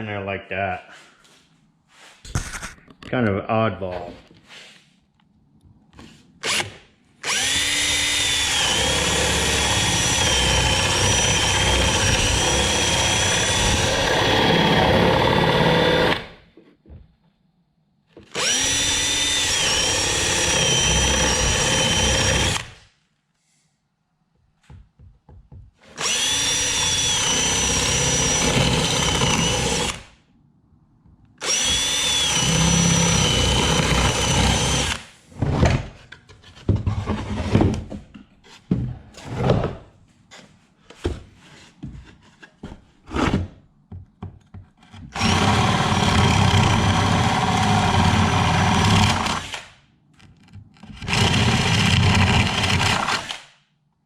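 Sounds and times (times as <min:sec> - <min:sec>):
power tool cutting wood: 0:06.4 - 0:16.4, 0:18.3 - 0:22.8, 0:25.9 - 0:30.1, 0:31.4 - 0:35.1, 0:45.1 - 0:49.7, 0:50.9 - 0:53.4.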